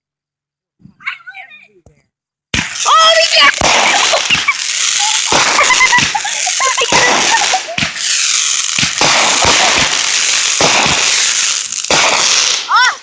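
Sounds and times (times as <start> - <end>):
firework hiss: 2.5 - 13.0
fireworks bangs and crackles: 2.5 - 13.0
firework whistles: 2.6 - 12.8.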